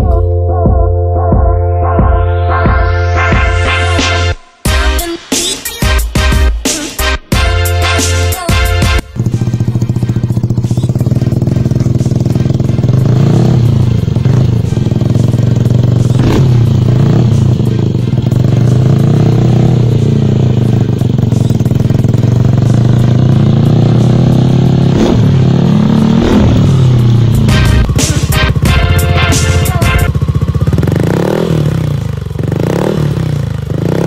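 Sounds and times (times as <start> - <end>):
scooter engine revving: 7.8 - 34.0.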